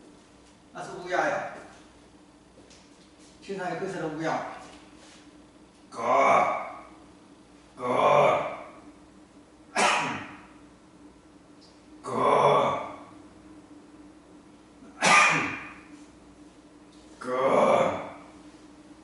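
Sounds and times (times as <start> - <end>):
person coughing gasps: 9.8 - 10.4, 15.0 - 15.7.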